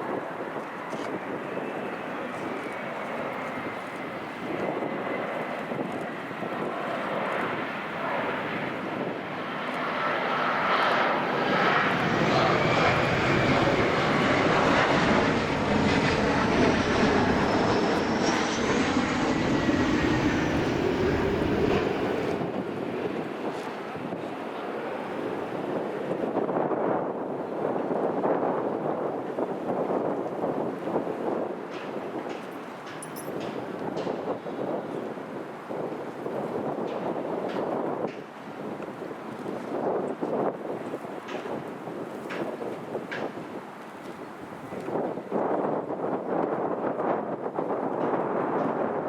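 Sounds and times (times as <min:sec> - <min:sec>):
jet airliner engine roar: 0:00.0 - 0:49.0
wind buffeting microphone: 0:00.0 - 0:49.0
high turbine whine: 0:00.1 - 0:24.1.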